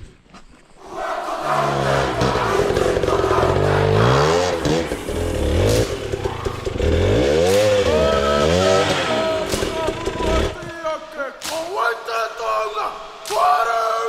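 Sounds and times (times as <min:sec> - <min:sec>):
dirt bike engine revving: 0:00.8 - 0:10.7.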